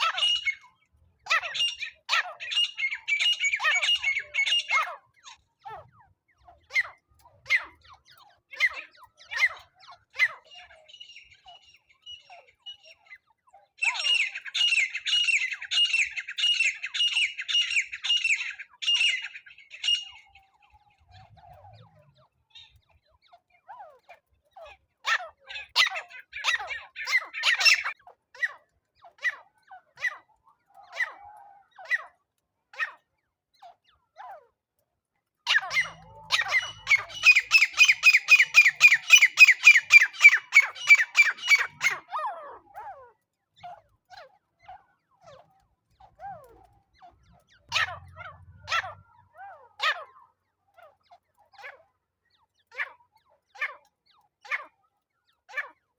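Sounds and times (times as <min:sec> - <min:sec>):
francolin harsh squawking calls: 0:00.0 - 0:00.7, 0:01.3 - 0:05.0, 0:13.8 - 0:20.3, 0:35.5 - 0:42.1.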